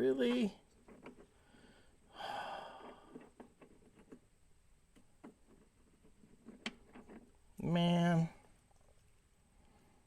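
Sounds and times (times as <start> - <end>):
person sighing: 2.1 - 3.3.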